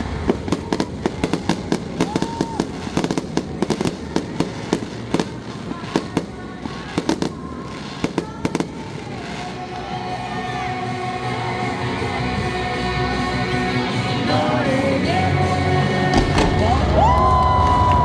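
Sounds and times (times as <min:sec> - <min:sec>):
fireworks bangs and cracks: 0:00.0 - 0:10.7, 0:16.1 - 0:18.0
low rumble: 0:15.0 - 0:18.0.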